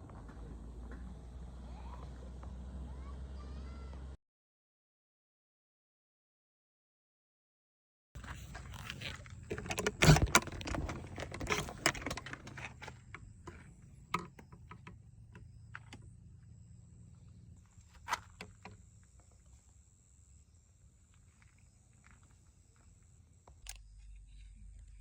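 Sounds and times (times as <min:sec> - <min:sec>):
faint low hum: 0:08.2 - 0:25.0.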